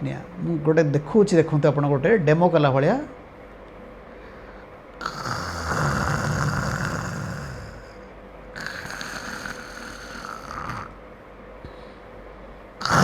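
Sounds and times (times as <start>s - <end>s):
person snoring: 5.0s - 11.0s, 12.8s - 13.0s.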